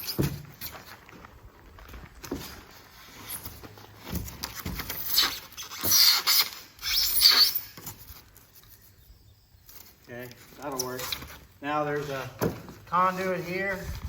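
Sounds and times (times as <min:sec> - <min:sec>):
foam board squeaking and rasping: 0:00.0 - 0:01.0, 0:02.7 - 0:08.9.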